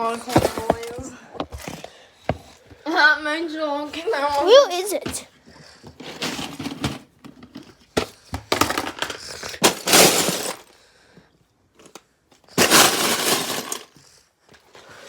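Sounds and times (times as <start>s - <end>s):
small hard objects clattering: 8.5s - 10.8s, 12.6s - 14.0s.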